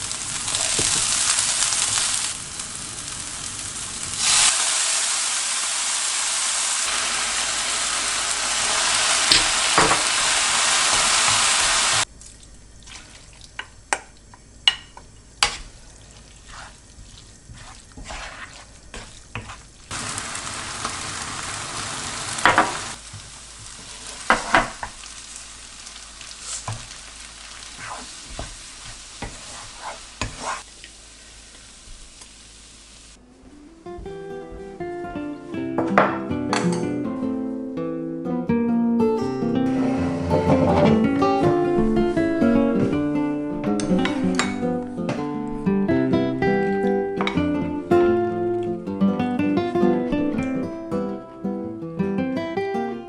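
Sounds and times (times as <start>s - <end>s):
food sizzling in a frying pan: 0.0s - 12.1s, 14.7s - 33.2s.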